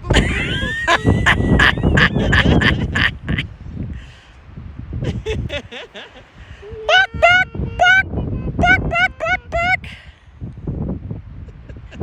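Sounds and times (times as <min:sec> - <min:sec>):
person imitating chicken: 0:05.1 - 0:10.0.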